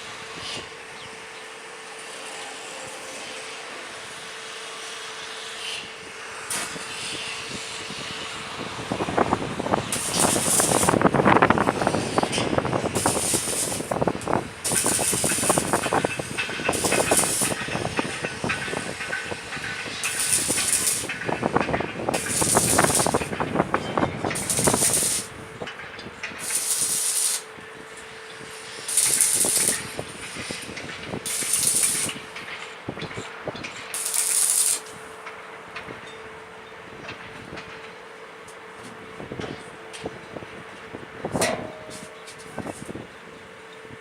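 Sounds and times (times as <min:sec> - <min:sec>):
electric arc welding crackling: 0:06.5 - 0:07.4, 0:08.9 - 0:25.4, 0:26.3 - 0:32.4, 0:33.9 - 0:35.1
steady hum: 0:06.6 - 0:32.6.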